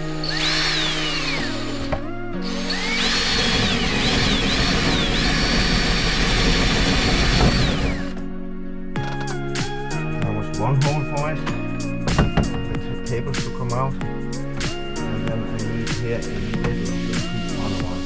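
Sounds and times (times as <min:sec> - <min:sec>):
power drill boring a hole: 0:00.0 - 0:08.2, 0:15.0 - 0:18.0
background music: 0:00.0 - 0:18.0.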